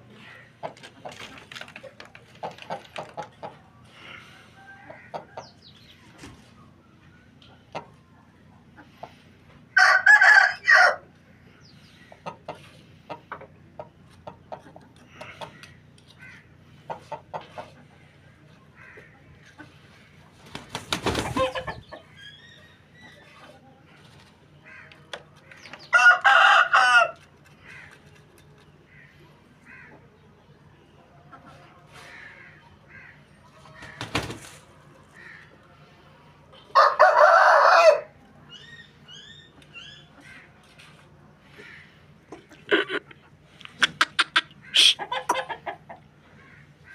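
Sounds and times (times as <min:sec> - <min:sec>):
chicken clucking: 0:00.0 - 0:35.8, 0:36.4 - 0:46.8
rooster crowing: 0:09.8 - 0:11.0, 0:25.9 - 0:27.2, 0:36.7 - 0:38.1.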